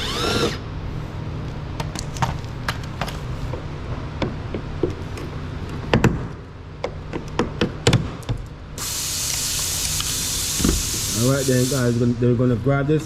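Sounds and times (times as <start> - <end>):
steady hiss: 8.8 - 12.4.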